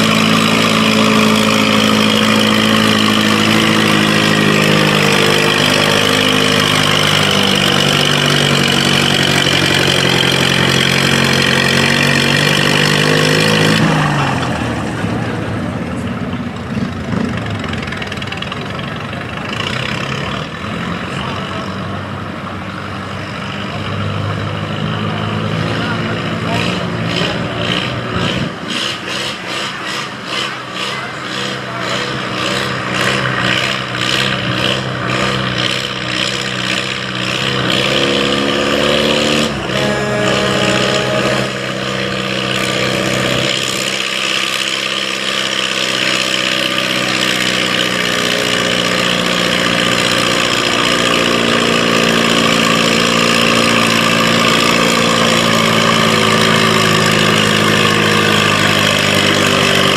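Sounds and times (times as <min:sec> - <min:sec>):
tractor engine revving: 0:00.0 - 0:59.9
high whine: 0:39.2 - 0:43.8.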